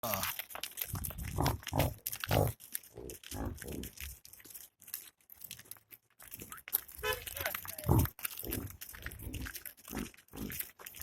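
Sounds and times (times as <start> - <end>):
crackling clicks: 0.0 - 11.0
yaks grunting: 0.9 - 4.2, 7.2 - 11.0.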